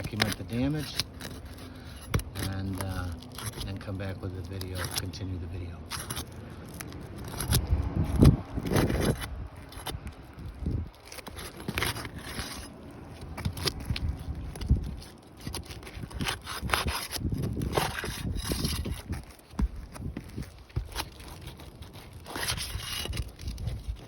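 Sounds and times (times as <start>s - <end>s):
shingles scraping and rubbing: 0.0s - 24.0s.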